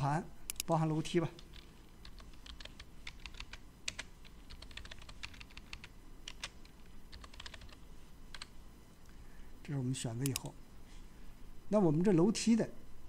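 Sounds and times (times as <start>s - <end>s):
typing on computer keyboard: 1.4s - 8.5s.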